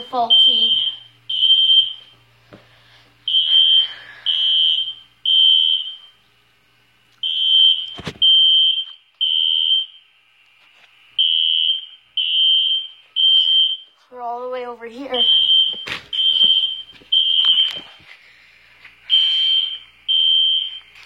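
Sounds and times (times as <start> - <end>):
fire alarm horn beeping: 0.0 - 2.1, 3.3 - 6.2, 7.2 - 10.0, 11.2 - 14.0, 15.1 - 17.8, 19.1 - 21.0.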